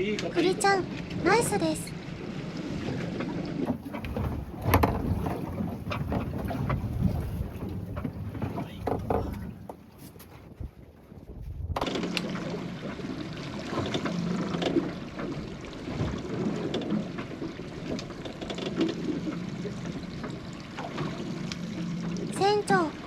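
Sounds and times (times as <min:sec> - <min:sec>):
water noise: 0:00.0 - 0:23.0
small knocks: 0:03.7 - 0:06.8
wind on microphone: 0:03.7 - 0:12.2.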